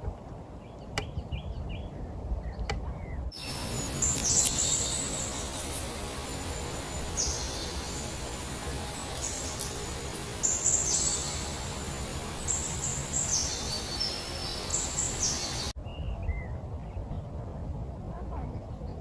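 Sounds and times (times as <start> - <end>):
low background rumble: 0.0 - 19.0
small birds calling: 0.6 - 15.8.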